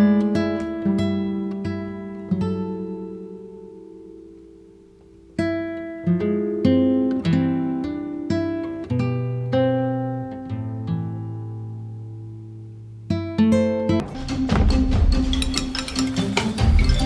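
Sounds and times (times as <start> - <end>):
acoustic guitar playing: 0.0 - 17.0.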